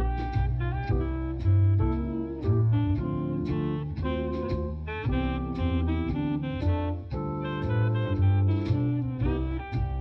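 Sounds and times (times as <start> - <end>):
jazzy instrumental music: 0.0 - 10.0.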